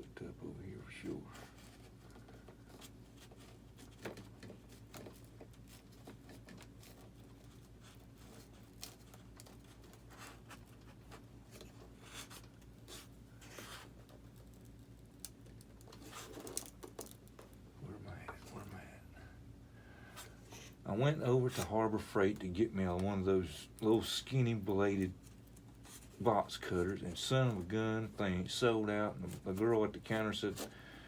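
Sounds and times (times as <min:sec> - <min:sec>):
steady low hum: 0:00.0 - 0:31.0
hands scratching and clicking foam: 0:01.5 - 0:17.6.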